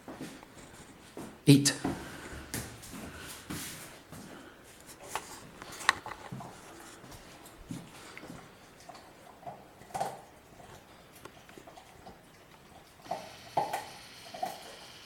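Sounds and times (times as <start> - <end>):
puppy chewing bone: 4.8 - 15.0.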